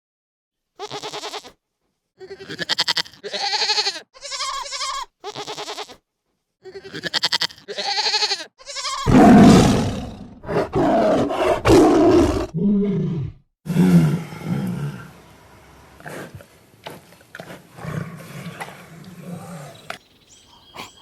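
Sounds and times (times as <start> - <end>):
animal bleating: 0.8 - 1.6, 2.2 - 6.0, 6.6 - 9.1
large animal roaring: 9.1 - 15.2
low growl: 9.1 - 15.3.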